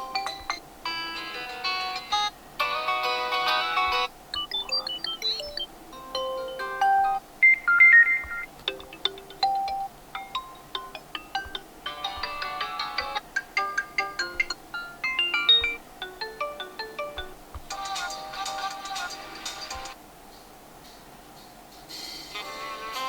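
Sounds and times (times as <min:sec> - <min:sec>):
electronic phone ringtone: 0:02.9 - 0:19.1.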